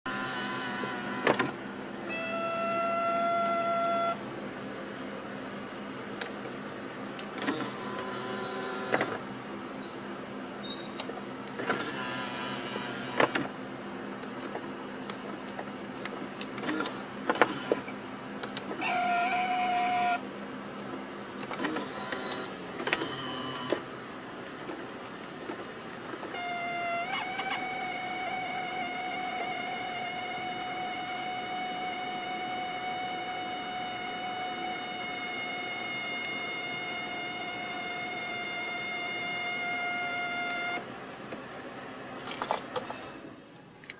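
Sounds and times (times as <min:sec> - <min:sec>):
mirror motor whining and grinding: 0:00.1 - 0:04.2, 0:07.3 - 0:09.3, 0:11.6 - 0:13.6, 0:18.6 - 0:20.2, 0:21.4 - 0:23.9, 0:26.2 - 0:40.9.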